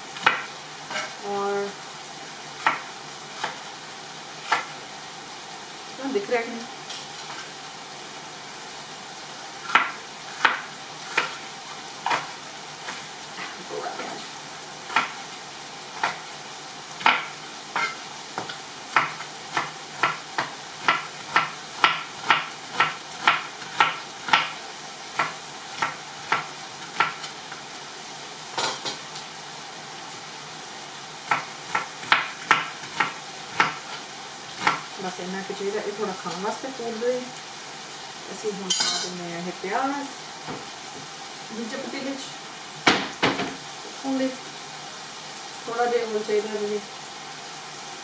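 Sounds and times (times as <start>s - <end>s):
chicken sizzling in a pan: 0.0s - 48.0s
knife chopping on cutting board: 0.2s - 1.1s, 2.6s - 3.6s, 4.4s - 4.8s, 9.7s - 11.4s, 14.9s - 15.2s, 17.0s - 24.6s, 31.3s - 34.0s, 34.6s - 34.9s.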